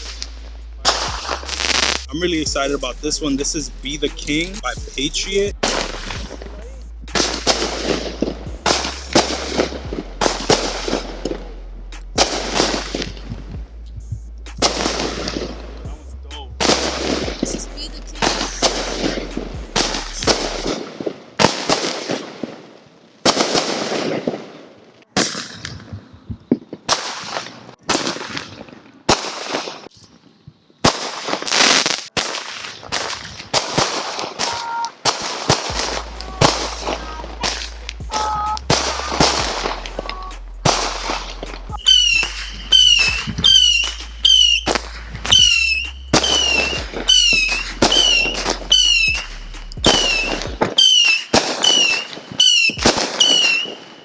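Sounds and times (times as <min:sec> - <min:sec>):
firework launches and bursts: 0:00.0 - 0:02.2, 0:05.6 - 0:13.2, 0:14.5 - 0:15.8, 0:16.6 - 0:17.6, 0:18.2 - 0:24.6, 0:26.8 - 0:30.2, 0:30.8 - 0:54.0
falling firework whistle: 0:34.3 - 0:39.8, 0:41.8 - 0:54.0.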